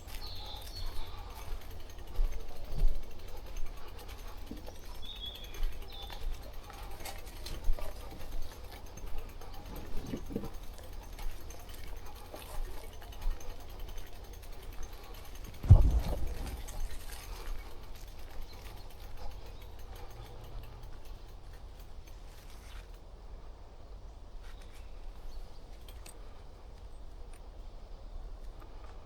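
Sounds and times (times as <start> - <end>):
bicycle clicking and rattling: 0.0 - 23.1, 24.4 - 29.0
steady low rumble: 15.2 - 19.4.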